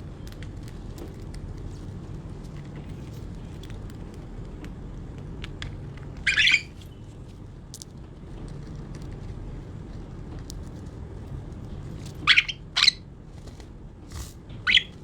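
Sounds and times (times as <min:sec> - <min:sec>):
birds pecking at food: 0:00.0 - 0:15.0
budgie squawk: 0:06.2 - 0:06.8, 0:12.2 - 0:13.1, 0:14.6 - 0:15.0.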